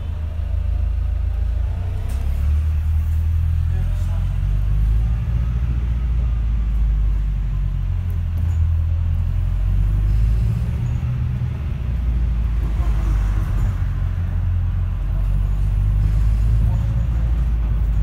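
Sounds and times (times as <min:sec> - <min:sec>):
bus engine rumble from inside: 0:00.0 - 0:18.0.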